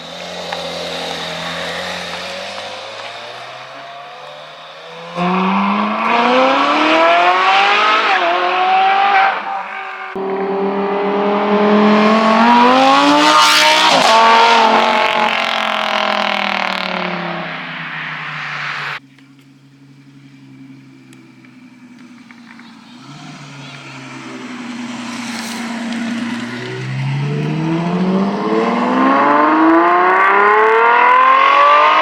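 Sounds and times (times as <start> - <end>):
car engine accelerating hard: 0.0 - 32.0.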